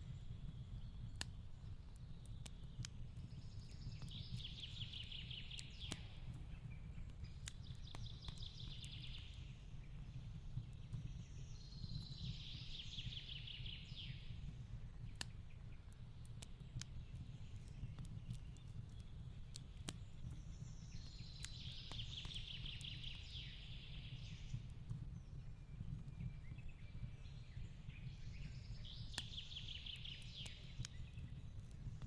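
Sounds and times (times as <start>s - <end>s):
wood fire crackling and popping: 0.0s - 32.0s.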